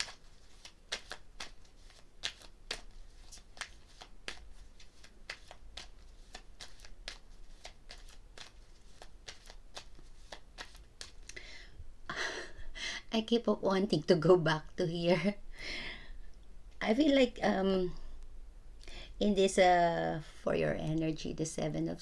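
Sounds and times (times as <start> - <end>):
crisp card slaps: 0.0 - 11.4
cards being shuffled: 0.0 - 11.5.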